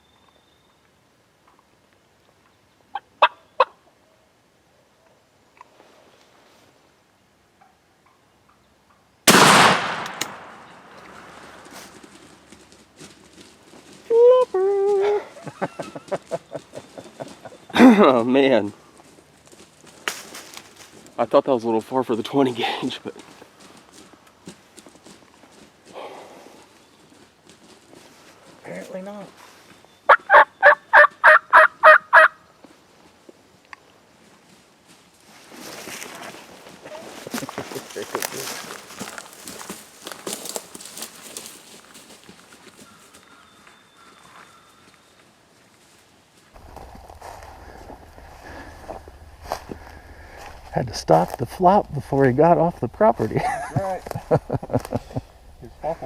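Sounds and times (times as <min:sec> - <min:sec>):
turkey yelps: 0:02.9 - 0:03.8, 0:30.1 - 0:32.4
shotgun shot: 0:09.3 - 0:11.4
rustling from movement: 0:10.3 - 0:14.1, 0:18.5 - 0:29.9, 0:32.7 - 0:43.3, 0:44.2 - 0:56.0.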